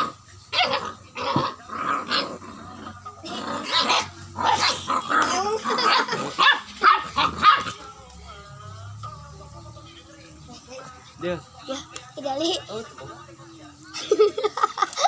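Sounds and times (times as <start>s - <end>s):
dog barking and growling: 0.0s - 7.9s.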